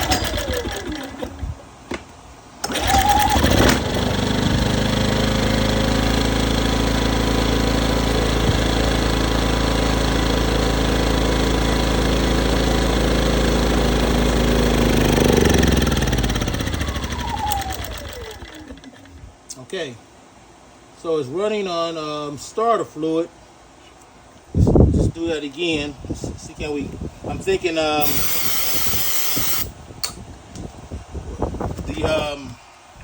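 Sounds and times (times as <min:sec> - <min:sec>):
generator engine running: 0:00.0 - 0:01.6, 0:02.6 - 0:19.3, 0:28.0 - 0:29.7.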